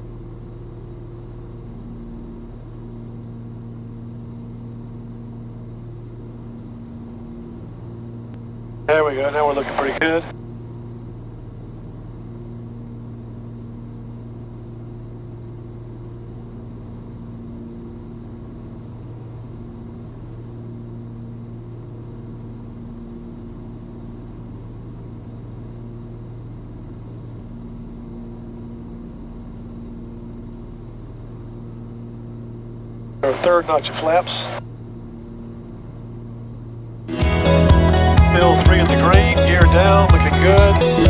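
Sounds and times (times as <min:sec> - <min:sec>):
higher hum: 0:08.9 - 0:10.3, 0:33.2 - 0:34.6, 0:37.1 - 0:41.0
propeller aircraft engines droning: 0:08.9 - 0:10.3, 0:33.2 - 0:34.6, 0:37.1 - 0:41.0.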